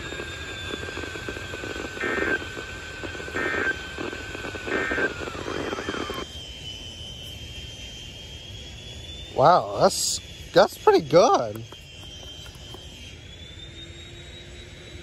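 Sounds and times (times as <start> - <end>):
warbling data tones: 0.0 - 15.0
radio static: 1.0 - 6.2
faint thin whistle: 4.7 - 15.0.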